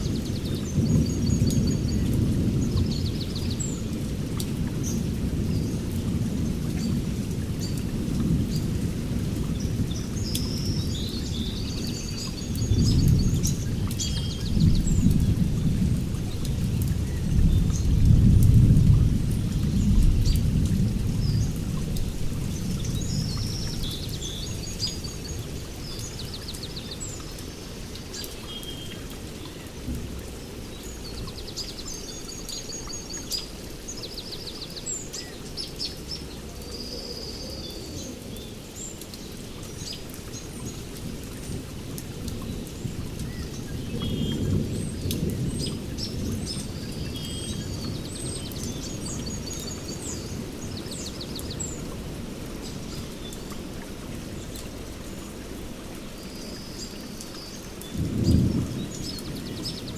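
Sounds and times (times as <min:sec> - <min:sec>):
rain falling: 0:00.0 - 0:59.9
low thunder rolling: 0:57.9 - 0:59.9.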